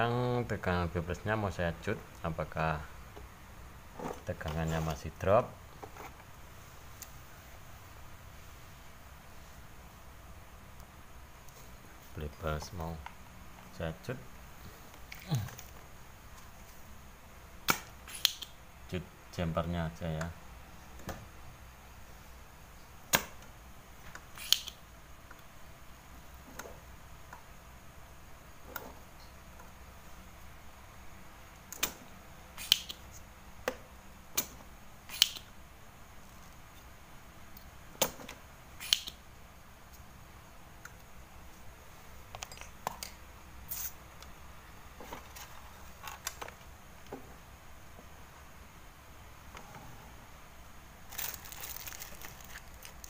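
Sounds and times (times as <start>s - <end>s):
short hiss: 43.7s - 44.0s.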